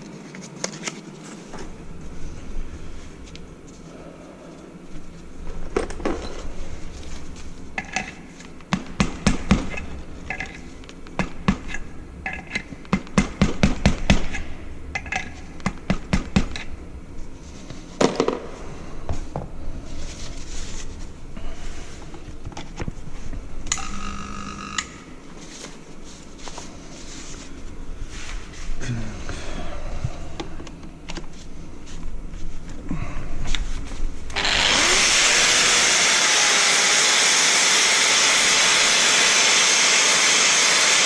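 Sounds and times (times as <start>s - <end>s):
metal parts clinking: 15.0s - 15.4s.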